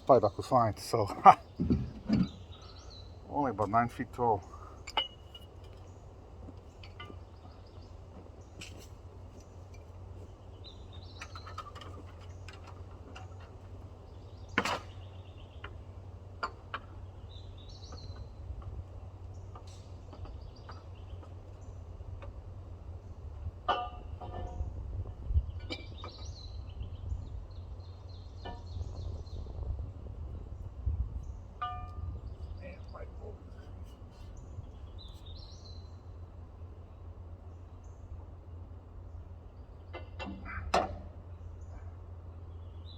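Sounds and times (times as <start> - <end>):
birds chirping: 0.0 - 42.9
metal clanks and knocks: 1.2 - 2.5, 4.8 - 5.8, 11.2 - 13.7, 23.6 - 24.8, 25.6 - 26.3, 28.4 - 29.0, 31.6 - 32.1, 39.9 - 41.2
steady low rumble: 21.4 - 42.7.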